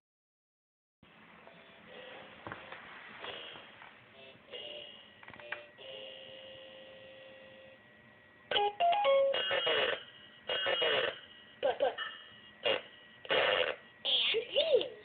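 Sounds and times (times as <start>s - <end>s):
faint electronic hum: 1.1s - 15.0s
held electronic tone: 8.5s - 14.0s.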